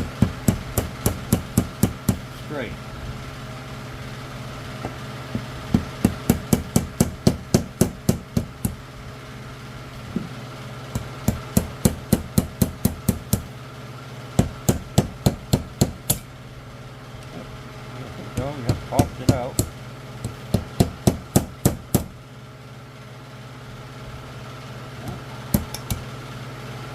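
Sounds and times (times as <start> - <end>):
hammer tapping metal: 25.0 - 26.0.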